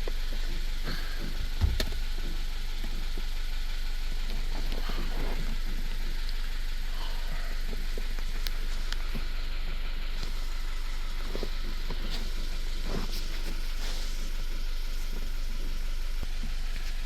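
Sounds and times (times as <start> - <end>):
car engine idling: 0.0 - 17.0
low thump: 1.6 - 2.3.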